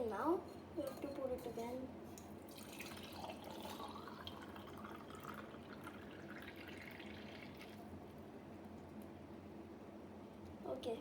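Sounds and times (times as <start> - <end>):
liquid trickling and dripping: 2.2 - 8.0.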